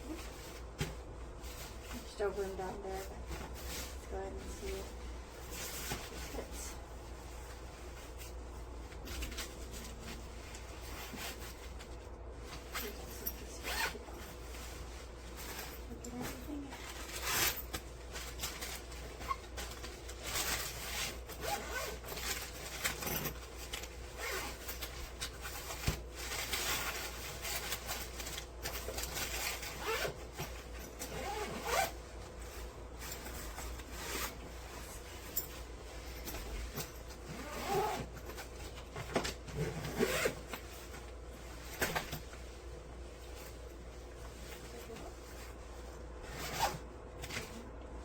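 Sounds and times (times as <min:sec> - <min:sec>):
suitcase zipper pulled: 0:13.5 - 0:14.1, 0:17.0 - 0:17.7, 0:20.2 - 0:24.9, 0:28.7 - 0:32.0, 0:36.8 - 0:38.3, 0:39.5 - 0:40.6, 0:46.3 - 0:46.8.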